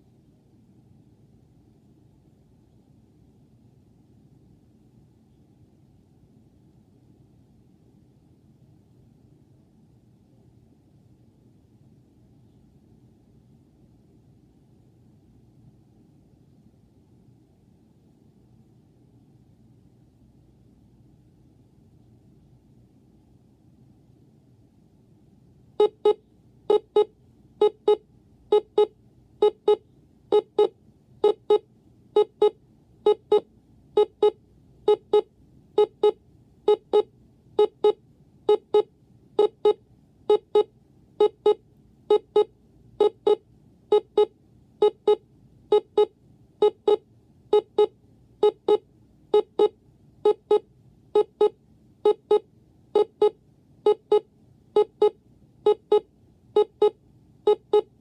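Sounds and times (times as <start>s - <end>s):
alarm clock double beeps: 25.8s - 31.6s, 32.2s - 33.4s, 34.0s - 48.8s, 49.4s - 50.6s, 53.0s - 54.2s, 54.8s - 57.9s.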